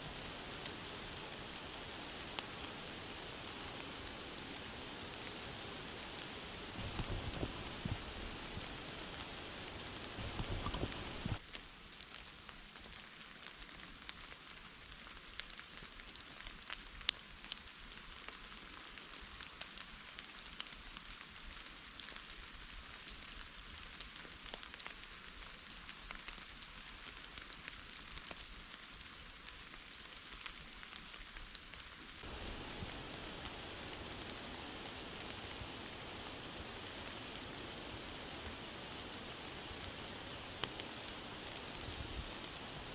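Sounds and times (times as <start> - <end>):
rain hissing: 0.0 - 11.4, 32.2 - 42.9
raindrops ticking: 0.1 - 11.4, 32.2 - 42.9.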